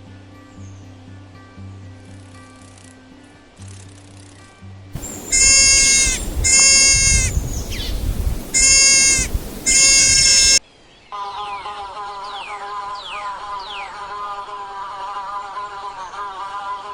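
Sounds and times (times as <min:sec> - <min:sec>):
animal calling loudly: 0:05.0 - 0:10.6.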